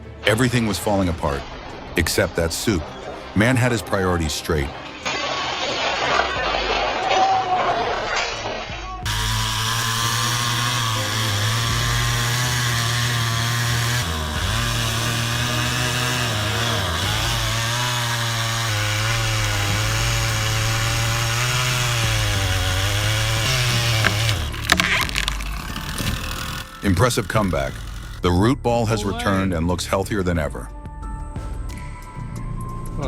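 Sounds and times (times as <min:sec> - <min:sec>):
chainsaw cutting wood: 0:05.0 - 0:28.3.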